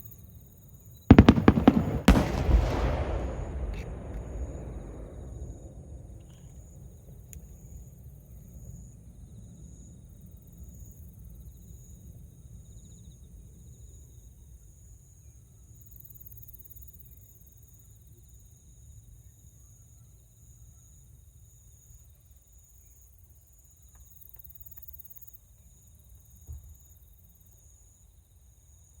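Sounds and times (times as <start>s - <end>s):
insects chirring: 1.1s - 6.6s
low rumble: 1.3s - 6.4s.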